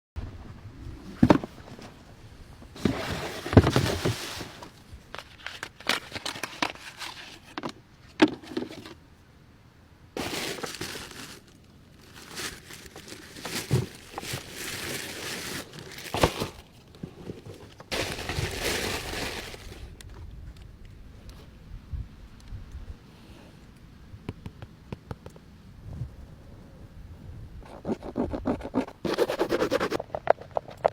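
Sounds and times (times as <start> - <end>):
packaging rustling and crinkling: 2.8 - 9.0, 10.2 - 20.1.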